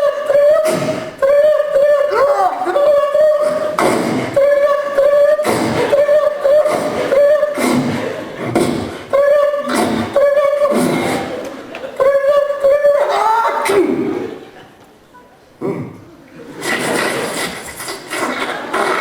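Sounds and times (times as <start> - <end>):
beatbox mouth bursts: 0.4 - 2.0, 2.9 - 11.4, 15.6 - 19.0.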